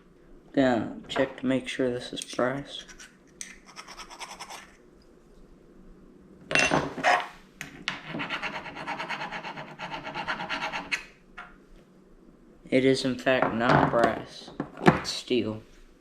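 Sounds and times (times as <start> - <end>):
tool scraping metal: 8.0 - 11.1.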